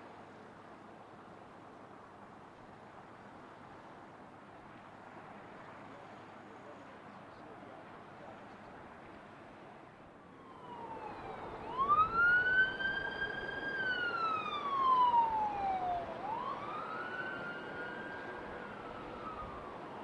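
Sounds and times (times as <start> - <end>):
siren wailing: 10.4 - 20.0.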